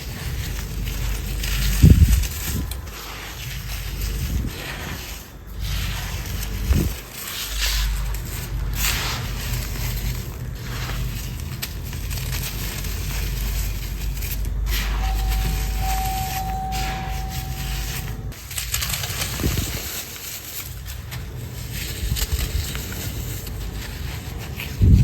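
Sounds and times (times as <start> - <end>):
sand-cement crumbling and crunching: 0.0 - 25.0
steady tone: 14.7 - 18.4.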